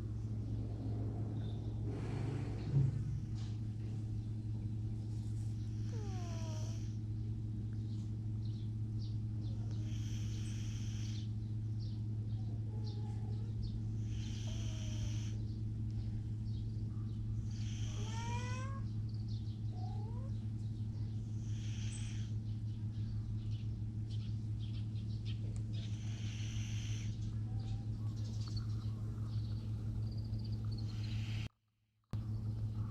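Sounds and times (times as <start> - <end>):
steady low hum: 0.0 - 31.5, 32.1 - 32.9
cat snoring: 5.7 - 7.0, 9.7 - 11.3, 14.0 - 15.4, 17.4 - 18.8, 21.3 - 22.3, 25.8 - 27.1, 30.9 - 31.5.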